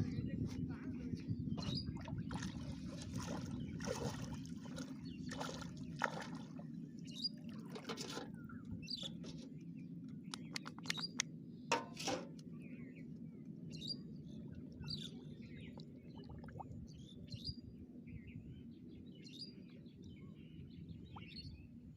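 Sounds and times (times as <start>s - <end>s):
steady low rumble: 0.0s - 7.3s
small birds chirping: 0.2s - 7.7s, 8.3s - 11.4s, 12.4s - 21.7s
water splashing: 1.9s - 6.7s.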